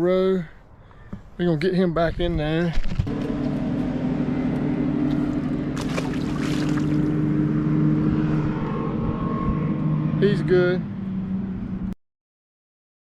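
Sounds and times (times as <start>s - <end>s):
outboard engine humming: 3.1s - 10.1s.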